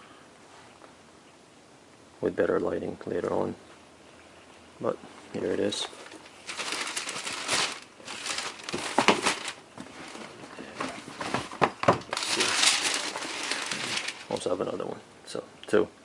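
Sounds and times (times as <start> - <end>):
packing paper rustling: 5.4 - 14.8.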